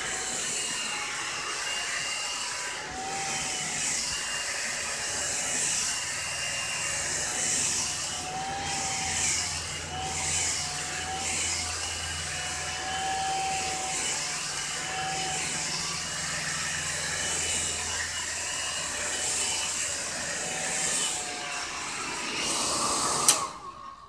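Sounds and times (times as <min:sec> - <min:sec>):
blow dryer motor hum and air: 0:00.0 - 0:24.0.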